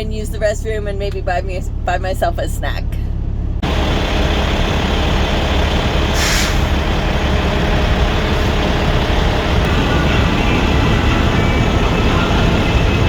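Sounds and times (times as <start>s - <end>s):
diesel truck engine rumble: 0.0s - 13.0s
air brake hiss: 6.1s - 6.8s.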